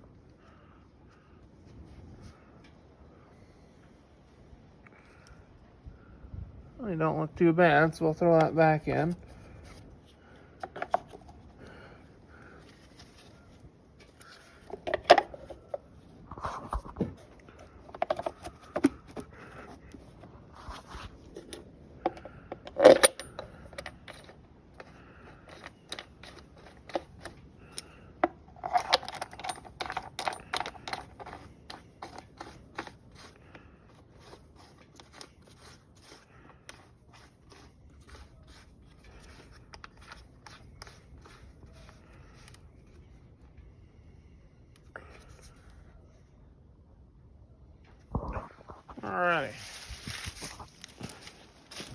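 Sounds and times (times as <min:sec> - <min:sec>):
metal tools clinking and scraping: 0:20.8 - 0:33.4.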